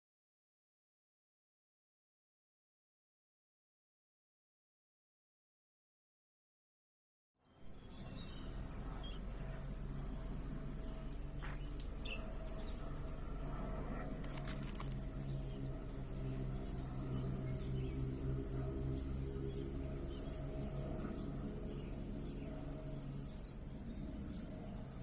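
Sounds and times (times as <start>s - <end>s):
steady low hum: 7.5s - 25.0s
small bird chirping: 7.7s - 25.0s.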